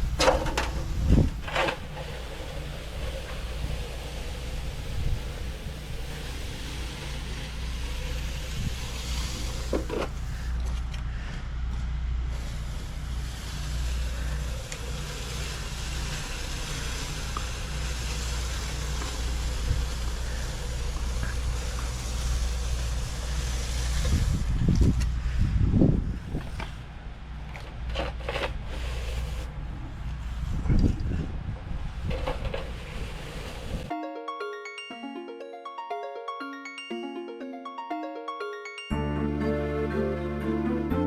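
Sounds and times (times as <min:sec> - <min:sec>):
diesel engine droning: 0:00.0 - 0:27.6.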